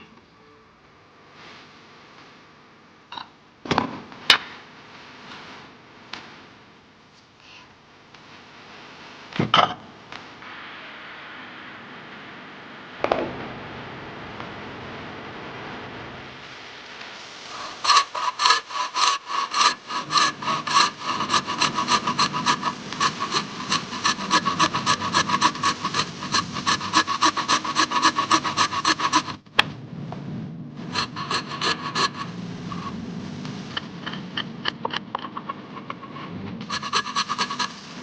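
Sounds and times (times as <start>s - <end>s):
hand saw cutting wood: 17.5s - 29.4s, 30.9s - 32.9s, 36.6s - 38.0s.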